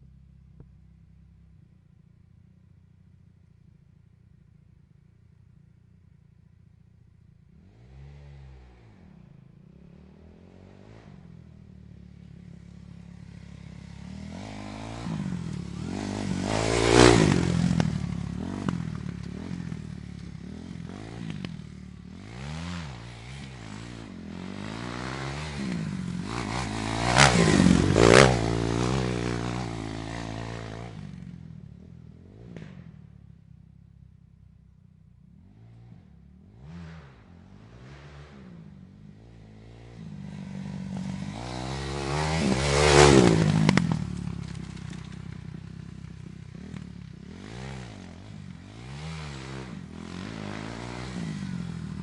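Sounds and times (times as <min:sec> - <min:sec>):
dirt bike engine passing by: 0:07.5 - 0:33.3, 0:35.3 - 0:52.0.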